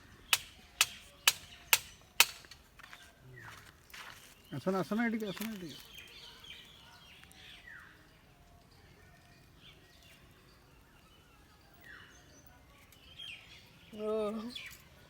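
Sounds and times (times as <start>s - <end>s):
small bird chirps: 2.8s - 8.2s, 9.1s - 15.0s.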